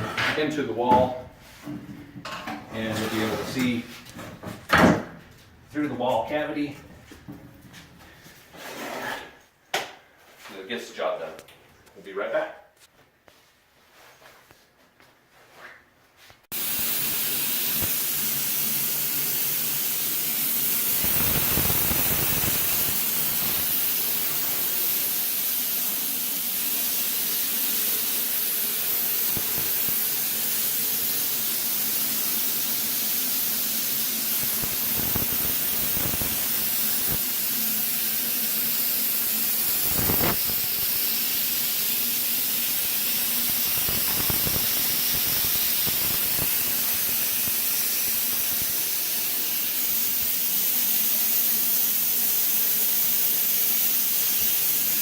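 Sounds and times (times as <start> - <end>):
fog machine hissing: 16.5 - 55.0.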